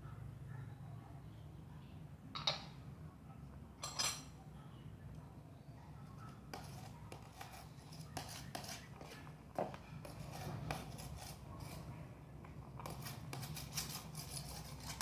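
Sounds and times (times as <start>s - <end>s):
kitchenware clinking: 2.4s - 2.8s, 3.8s - 4.4s.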